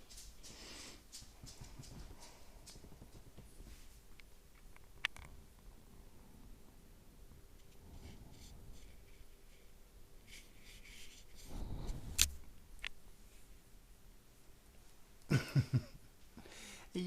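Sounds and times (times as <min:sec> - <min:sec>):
rustling and handling noises: 0:00.0 - 0:05.7, 0:07.4 - 0:13.6.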